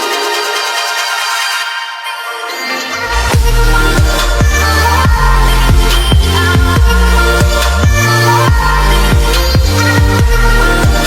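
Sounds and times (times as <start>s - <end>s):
electronic dance music: 0.0s - 11.0s.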